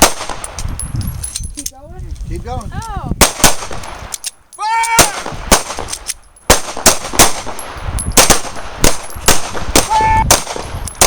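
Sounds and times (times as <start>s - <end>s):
person shouting command: 2.7s - 3.1s, 4.6s - 5.3s, 9.8s - 10.3s.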